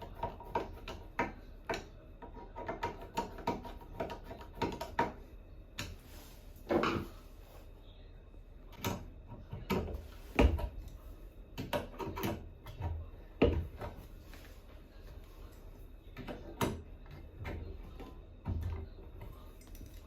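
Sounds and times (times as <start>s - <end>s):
tools knocking and clicking: 0.0s - 5.2s, 11.6s - 14.0s.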